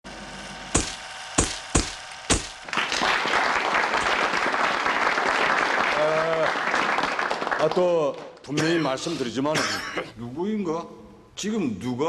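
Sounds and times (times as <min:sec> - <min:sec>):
sharp knocks: 0:00.7 - 0:02.6
applause: 0:02.6 - 0:08.5.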